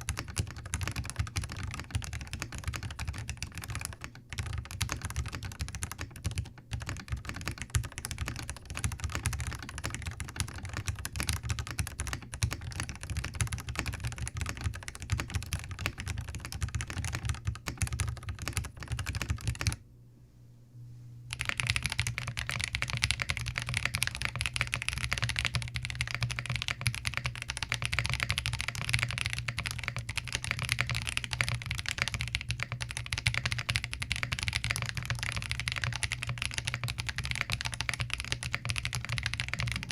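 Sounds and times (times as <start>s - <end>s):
typing on mechanical keyboard: 0.0s - 19.8s, 21.3s - 39.9s.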